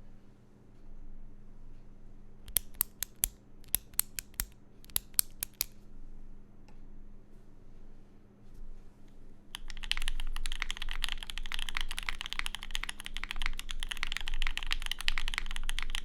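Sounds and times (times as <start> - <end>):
gel pen clicking: 2.5 - 5.8, 9.6 - 16.0.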